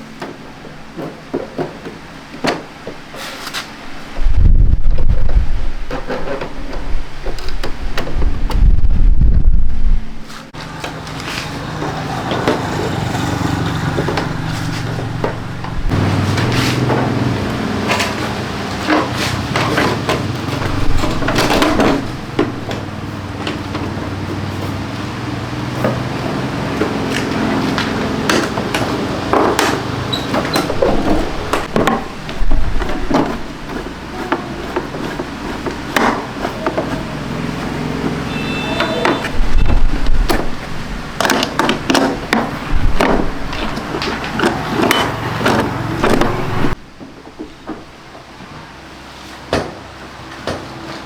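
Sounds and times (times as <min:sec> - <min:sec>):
steady low hum: 0:03.8 - 0:44.4
tools and parts clattering: 0:10.3 - 0:25.0, 0:40.4 - 0:47.9.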